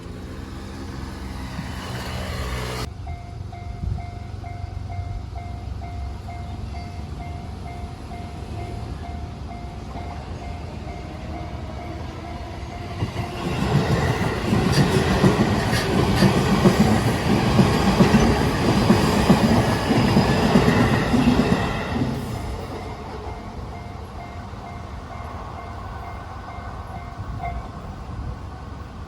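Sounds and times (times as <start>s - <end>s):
electric train passing: 0.0s - 29.0s
level crossing warning bell: 2.9s - 15.7s, 16.4s - 28.0s
train wheels clattering over rails: 12.7s - 23.9s.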